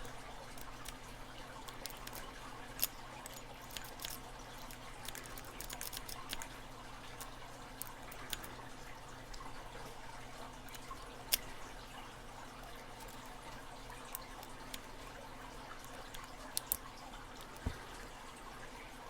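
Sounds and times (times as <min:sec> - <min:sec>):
lock pick clicking and scraping: 0:00.5 - 0:01.0, 0:01.7 - 0:06.5, 0:07.2 - 0:08.5, 0:15.9 - 0:16.8, 0:17.4 - 0:17.7.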